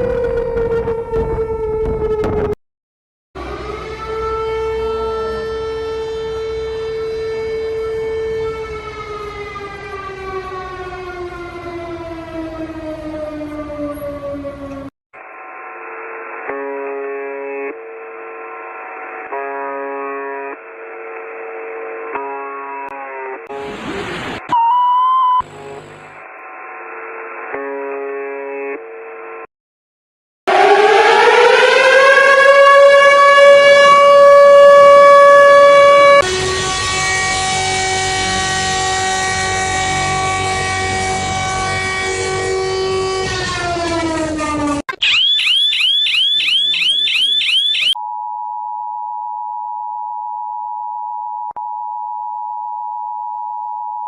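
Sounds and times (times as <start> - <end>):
siren winding up to a wail: 0.0 - 2.6, 3.4 - 14.9, 24.4 - 25.8, 30.5 - 48.0.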